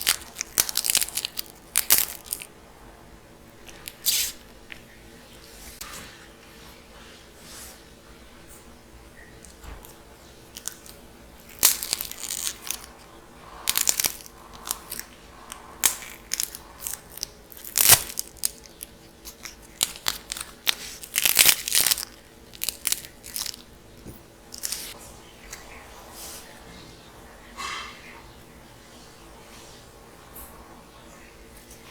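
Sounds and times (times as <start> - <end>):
dried clay cracking: 0.0 - 2.5, 9.4 - 25.0.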